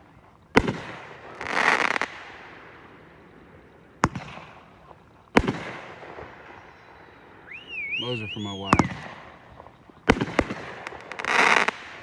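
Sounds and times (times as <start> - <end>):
firework crackling burst: 0.0 - 12.0
firework bangs with echo: 0.5 - 2.9, 4.0 - 6.8, 8.4 - 12.0.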